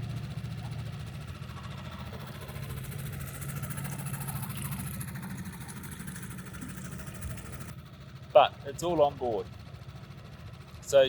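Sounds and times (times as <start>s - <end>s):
outboard motor idling: 0.0s - 11.0s.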